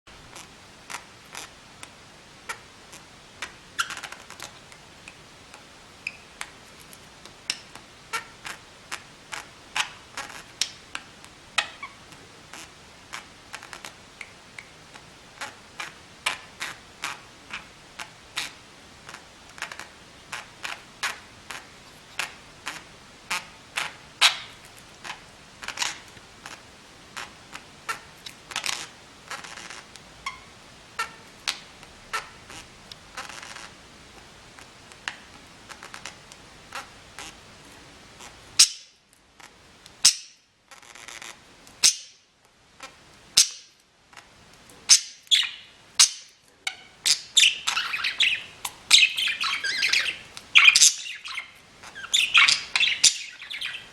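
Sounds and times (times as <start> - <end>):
budgerigars squeaking: 6.0 - 6.3, 44.9 - 53.9.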